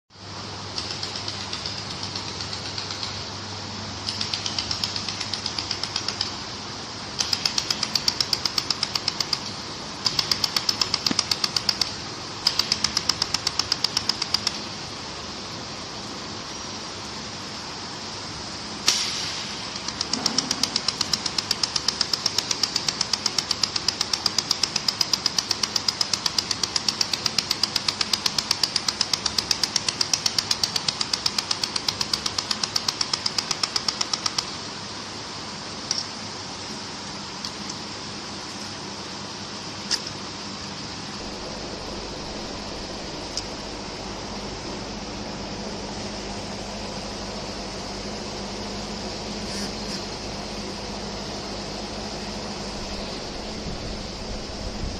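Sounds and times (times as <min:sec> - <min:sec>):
steady background hum: 0:00.1 - 0:54.9
laser welder snapping: 0:04.0 - 0:06.4, 0:07.2 - 0:14.6, 0:18.9 - 0:34.6
loud crack: 0:18.8 - 0:21.3.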